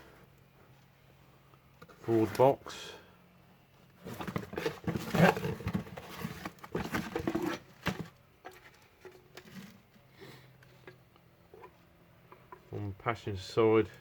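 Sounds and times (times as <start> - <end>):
rummaging through car parts: 3.9 - 10.0.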